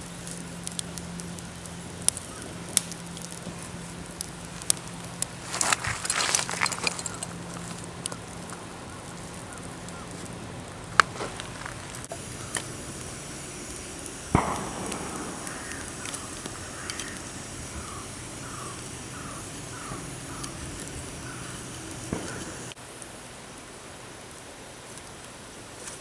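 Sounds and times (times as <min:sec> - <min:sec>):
campfire crackling: 0:00.0 - 0:26.0
bird calling falling notes: 0:05.5 - 0:08.2, 0:11.2 - 0:22.8
loud bang with ringing tail: 0:12.2 - 0:22.7.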